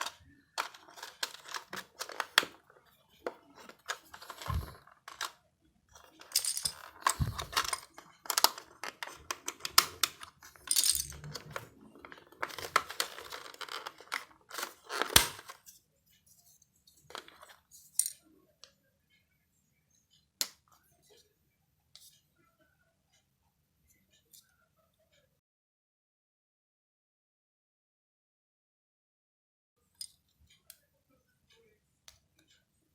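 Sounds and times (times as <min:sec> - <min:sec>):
plastic keycaps clicking and clattering: 0:00.0 - 0:05.4, 0:06.0 - 0:15.6.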